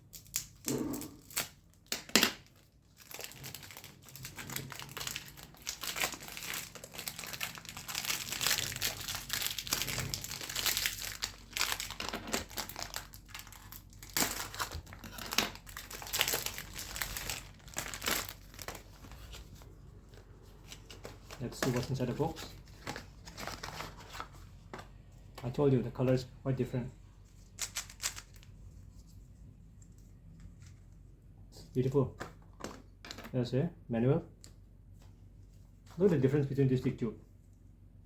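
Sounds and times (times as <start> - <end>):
plastic wrapping ripping: 0.0 - 19.4, 27.6 - 28.5
plastic wrapping crinkling: 0.0 - 24.8, 27.3 - 29.2.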